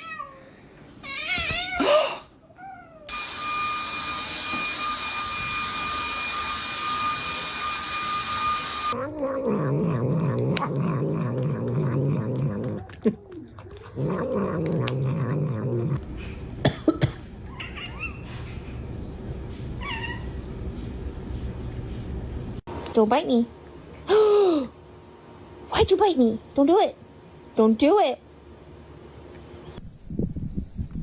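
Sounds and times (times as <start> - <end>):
cat meowing: 1.0 - 1.9.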